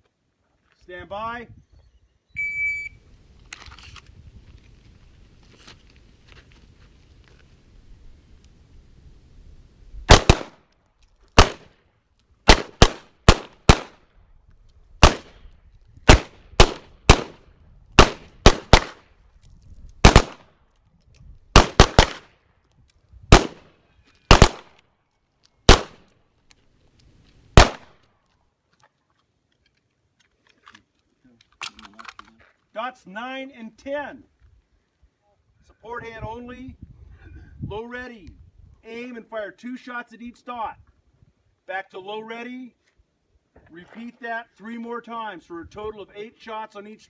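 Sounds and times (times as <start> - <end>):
pistol shots cracking: 10.1 - 10.7, 11.4 - 11.8, 12.4 - 14.0, 15.0 - 15.4, 16.1 - 17.4, 18.0 - 19.1, 20.0 - 20.5, 21.5 - 22.3, 23.3 - 23.7, 24.3 - 24.8, 25.7 - 26.1, 27.6 - 28.0.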